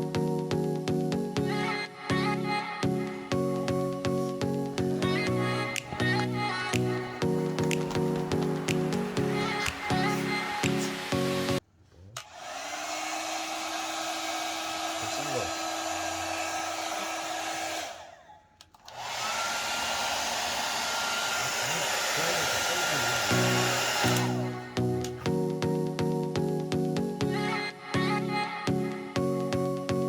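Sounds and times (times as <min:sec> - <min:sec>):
music: 0:00.0 - 0:11.6, 0:23.2 - 0:30.0
hair dryer blowing: 0:03.0 - 0:11.6, 0:12.2 - 0:25.4.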